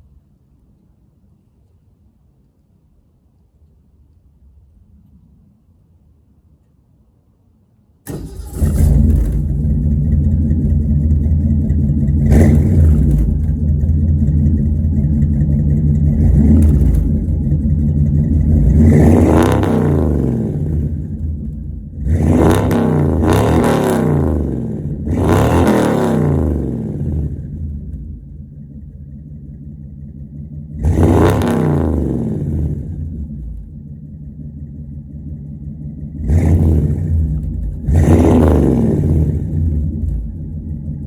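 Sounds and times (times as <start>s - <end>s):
engine idling rumble: 0.0s - 41.0s
car engine starting: 8.0s - 41.0s
engine revving: 8.1s - 28.3s, 30.4s - 33.9s, 36.0s - 41.0s.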